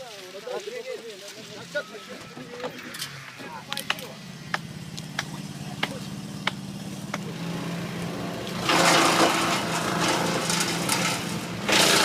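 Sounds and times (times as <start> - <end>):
petrol power tool cutting wood: 5.8 - 12.0.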